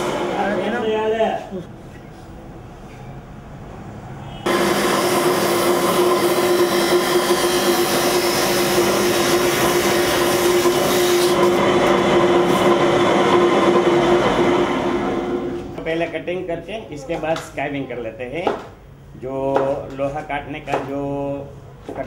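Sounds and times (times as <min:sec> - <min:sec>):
spinning blade cutting hose: 0:04.5 - 0:14.5.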